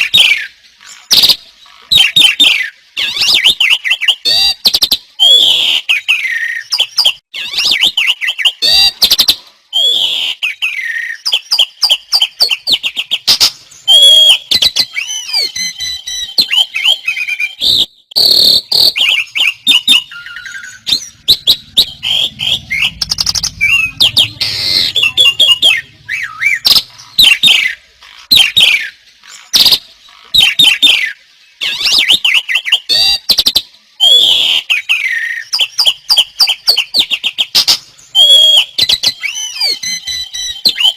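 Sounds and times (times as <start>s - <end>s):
songbirds singing: 0.0s - 40.9s.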